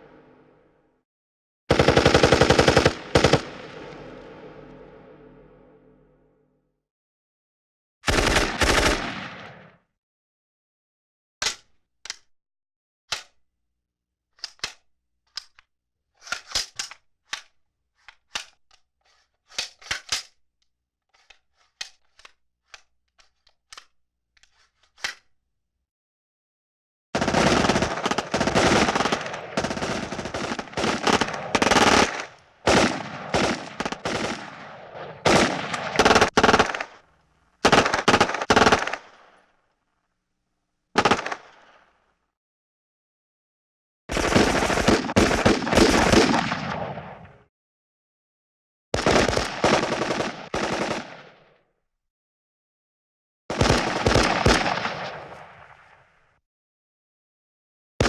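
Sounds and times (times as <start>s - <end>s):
machine gun fire: 1.7s - 3.8s, 27.2s - 34.6s, 35.2s - 37.0s, 44.1s - 46.8s.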